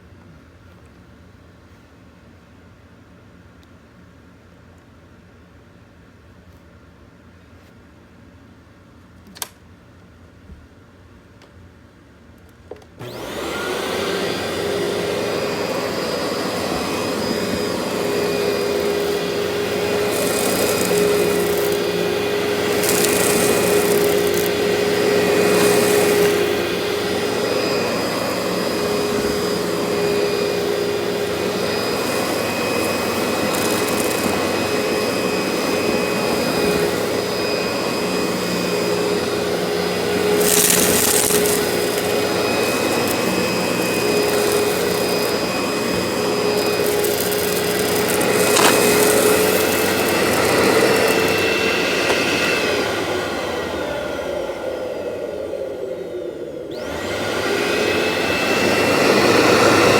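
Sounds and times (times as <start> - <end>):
vacuum cleaner running: 13.0 - 59.9.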